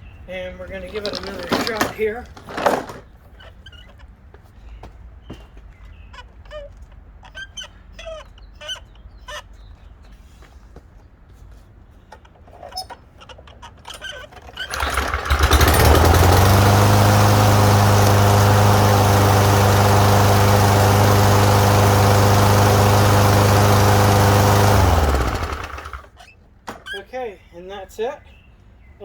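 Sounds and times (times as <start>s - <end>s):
lawnmower engine running: 0.7s - 3.0s, 14.1s - 26.2s.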